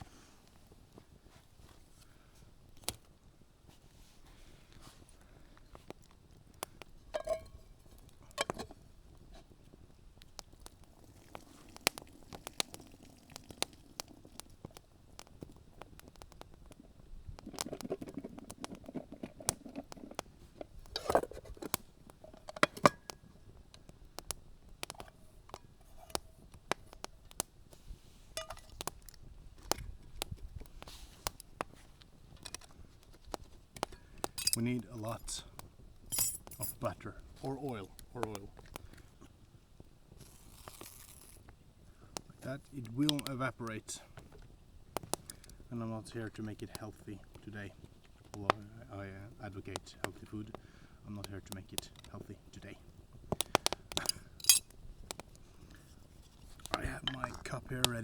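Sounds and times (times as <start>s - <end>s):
campfire crackling and popping: 0.0s - 58.0s
metal cookware clinking: 7.2s - 8.8s, 28.4s - 28.7s, 34.4s - 35.4s, 36.1s - 36.8s, 54.1s - 54.7s.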